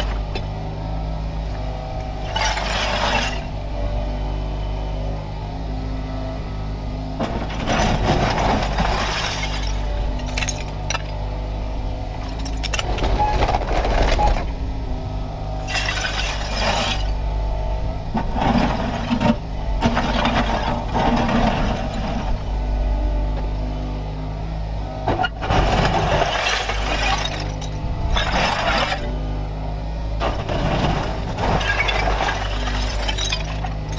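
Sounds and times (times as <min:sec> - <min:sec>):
excavator diesel engine running: 0:00.0 - 0:33.9
bucket scraping soil and stones: 0:15.6 - 0:17.2, 0:25.5 - 0:29.2.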